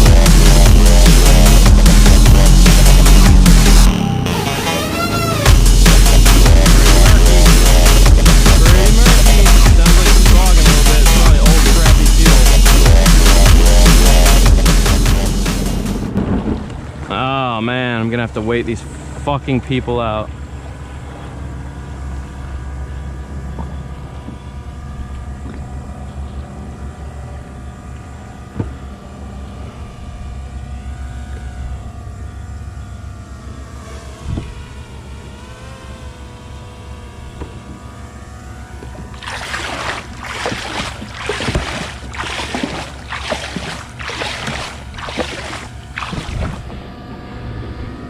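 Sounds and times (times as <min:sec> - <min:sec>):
jet ski engine idling: 0:00.0 - 0:48.0
water rushing and splashing: 0:39.1 - 0:46.7.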